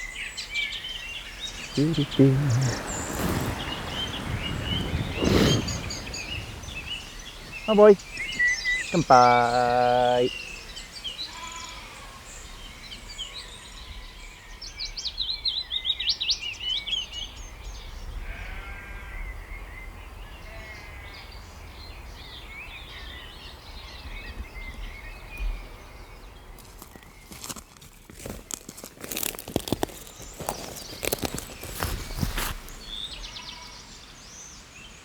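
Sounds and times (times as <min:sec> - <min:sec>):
small birds singing: 0:00.0 - 0:35.0
low wind rumble: 0:01.2 - 0:09.0
crackling rustles: 0:01.2 - 0:10.3, 0:26.6 - 0:33.5.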